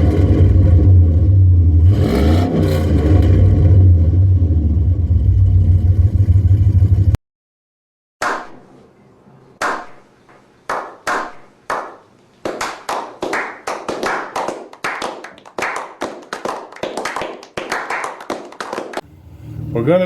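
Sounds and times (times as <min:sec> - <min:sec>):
exhaust claps: 0:00.0 - 0:07.2.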